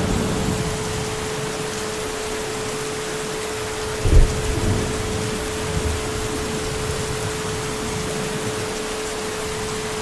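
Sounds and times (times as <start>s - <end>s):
low thunder rumble: 0.0s - 1.4s, 3.9s - 8.7s
heavy rain falling: 0.0s - 10.0s.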